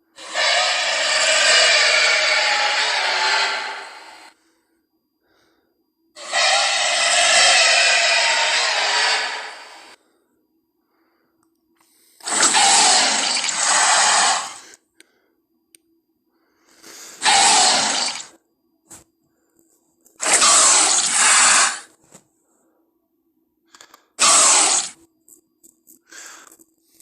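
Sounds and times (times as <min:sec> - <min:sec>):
faint steady hum: 0:00.0 - 0:06.3, 0:07.2 - 0:24.2
hoarse dinosaur roar: 0:00.2 - 0:04.3, 0:06.2 - 0:10.0, 0:12.2 - 0:14.6, 0:17.2 - 0:18.3, 0:20.2 - 0:21.9, 0:24.2 - 0:25.0.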